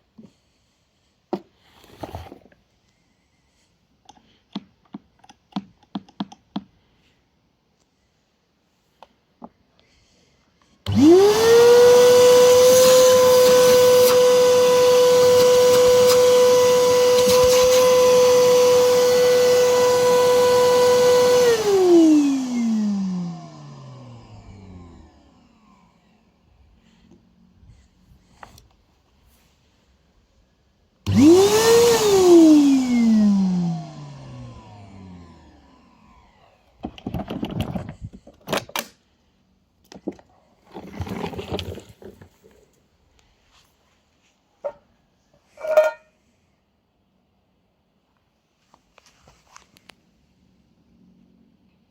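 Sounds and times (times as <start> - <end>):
vacuum cleaner motor whining: 10.8 - 27.0, 31.1 - 37.9.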